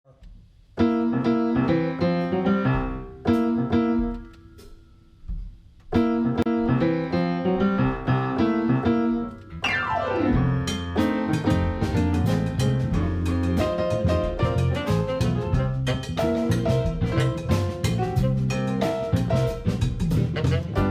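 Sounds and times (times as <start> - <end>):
piano blues chords: 0.8 - 20.9
drum kit hits: 2.2 - 6.2, 9.6 - 20.9.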